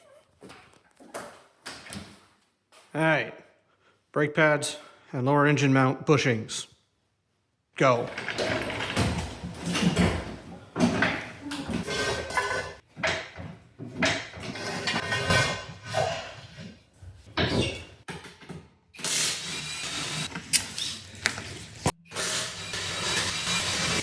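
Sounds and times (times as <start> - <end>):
tools clanking and knocking: 8.0 - 18.7.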